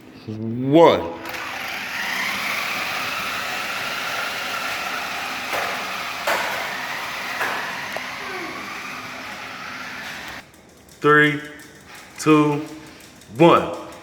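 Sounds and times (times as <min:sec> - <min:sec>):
toy car electric motors whining: 0:01.2 - 0:10.5
sharp knocks: 0:04.2 - 0:08.5.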